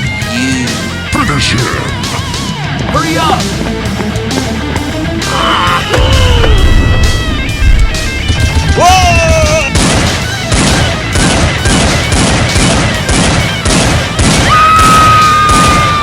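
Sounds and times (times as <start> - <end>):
background music: 0.0 - 16.0
person shouting: 5.2 - 6.9
blaster shots: 6.7 - 15.9.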